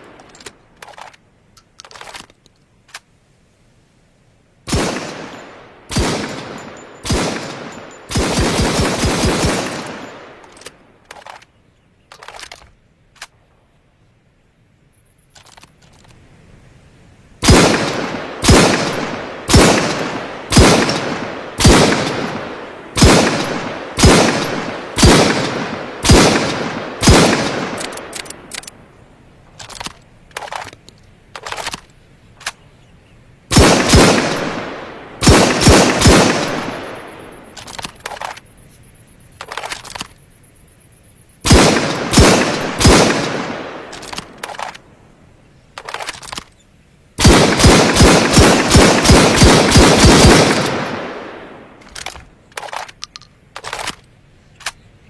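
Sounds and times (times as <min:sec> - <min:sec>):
faint clicks: 0:00.0 - 0:03.2, 0:09.7 - 0:13.4, 0:14.9 - 0:16.3, 0:27.7 - 0:28.8, 0:29.4 - 0:32.9, 0:36.8 - 0:41.2, 0:51.2 - 0:54.9
rifle shots with echo: 0:04.7 - 0:11.4, 0:17.4 - 0:28.8, 0:33.5 - 0:38.4, 0:41.4 - 0:44.9, 0:47.2 - 0:53.0.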